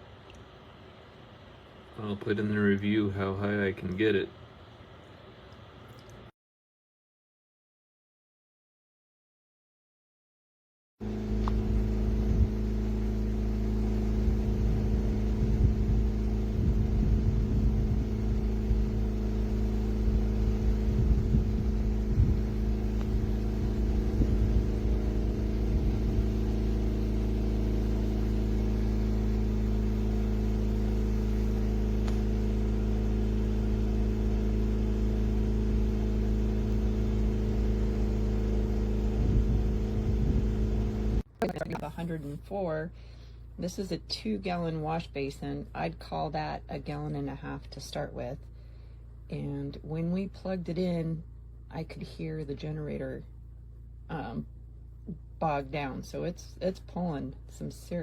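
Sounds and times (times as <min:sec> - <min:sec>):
generator engine humming: 0:11.0 - 0:43.9
uneven low rumble: 0:11.1 - 0:32.2.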